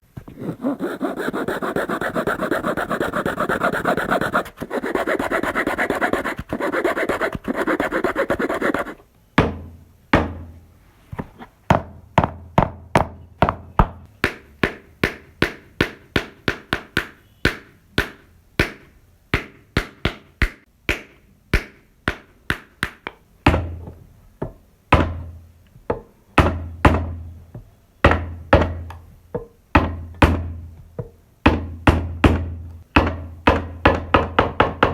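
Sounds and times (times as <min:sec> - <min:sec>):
sawing through wood: 0:00.3 - 0:09.0.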